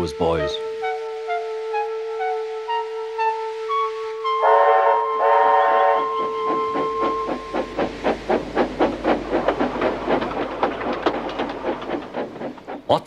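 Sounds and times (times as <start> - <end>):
steam locomotive whistle: 0.0 - 7.8
held music notes: 0.0 - 8.3
steam engine exhaust chuffing: 5.2 - 13.0.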